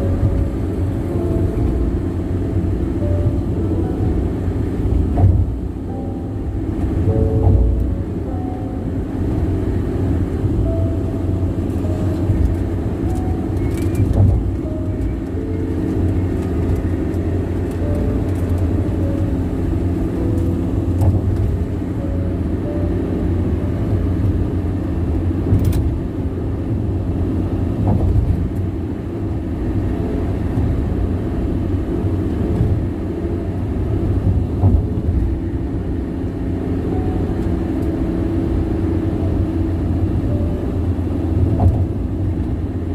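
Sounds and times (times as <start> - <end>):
car tyres rumbling on road: 0.0 - 42.9.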